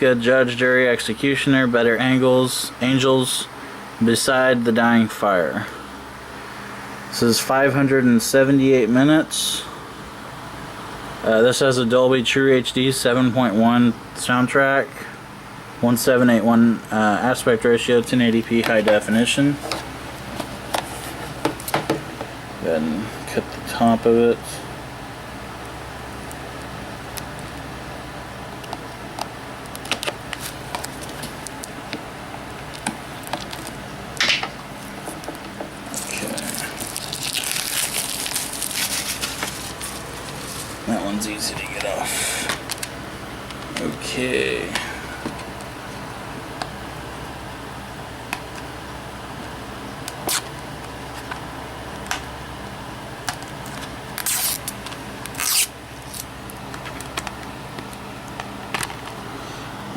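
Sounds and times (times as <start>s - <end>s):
steady low hum: 0.0s - 59.9s
plastic packaging crinkling: 32.7s - 33.8s, 34.8s - 41.5s, 53.6s - 57.5s
plastic shrink-wrap crackling: 35.9s - 40.9s, 54.2s - 57.2s.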